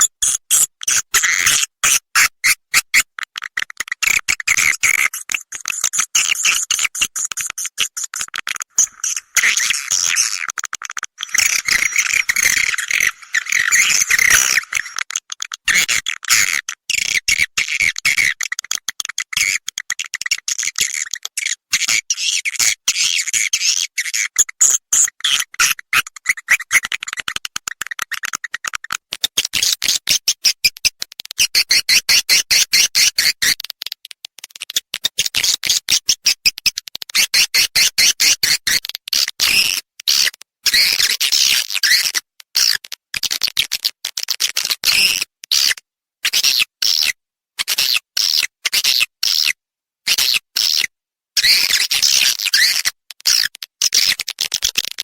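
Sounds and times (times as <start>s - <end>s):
swiftlet chirping and clicking trills: 11.1s - 15.7s.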